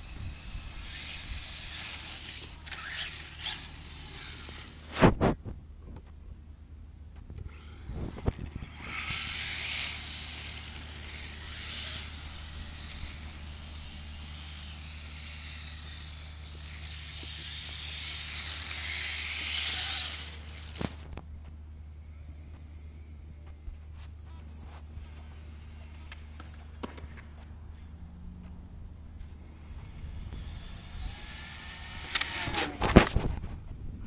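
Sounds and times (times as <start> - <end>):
rc car hissing run: 0.0 - 5.1, 7.5 - 21.1, 29.5 - 33.3.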